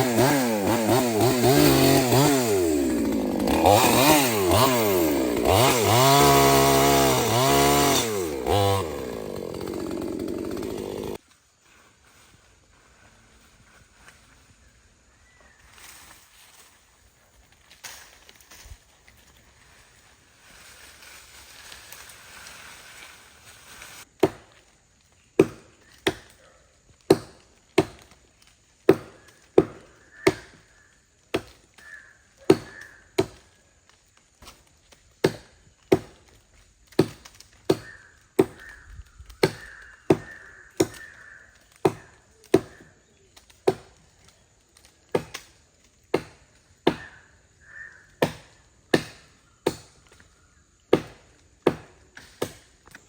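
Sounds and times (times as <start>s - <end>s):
axe chopping wood: 0.0s - 11.2s, 24.2s - 24.5s, 25.4s - 26.3s, 27.1s - 28.1s, 28.9s - 30.6s, 31.3s - 31.6s, 32.5s - 33.4s, 35.2s - 36.2s, 37.0s - 38.7s, 39.4s - 41.1s, 41.8s - 42.8s, 43.6s - 43.9s, 46.1s - 47.1s, 48.2s - 49.9s, 50.9s - 52.6s.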